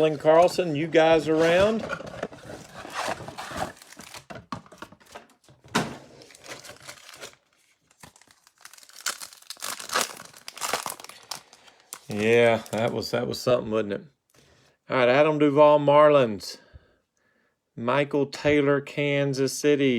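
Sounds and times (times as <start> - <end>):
plastic packaging tearing and crinkling: 2.3 - 5.3, 6.0 - 13.0.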